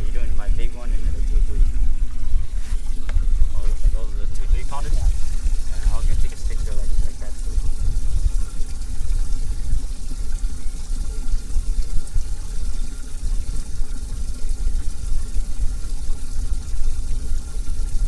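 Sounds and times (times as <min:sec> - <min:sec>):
low rumble: 0:00.0 - 0:13.2
water running and splashing: 0:00.0 - 0:18.0.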